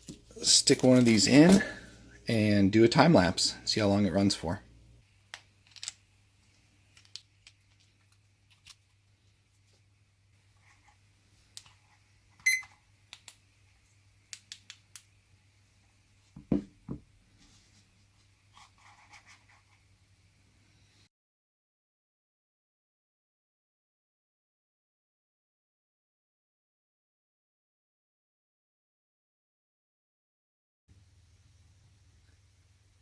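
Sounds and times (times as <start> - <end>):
dull knock: 16.4 - 17.0.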